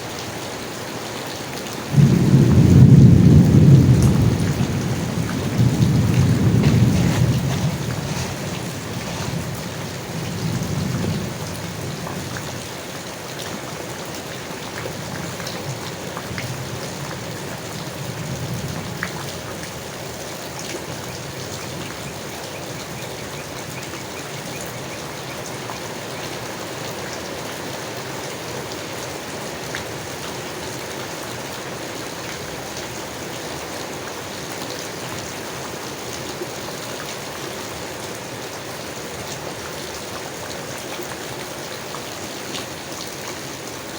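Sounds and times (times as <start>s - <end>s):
rain falling on leaves: 0.0s - 43.9s
distant thunder rumble: 1.9s - 12.6s.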